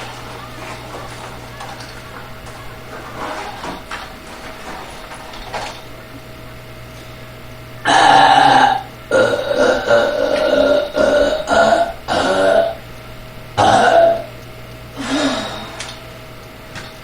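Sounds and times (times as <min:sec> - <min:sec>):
faint steady hum: 0:00.0 - 0:17.0
person burping: 0:07.8 - 0:12.8, 0:13.6 - 0:14.4, 0:15.0 - 0:16.0.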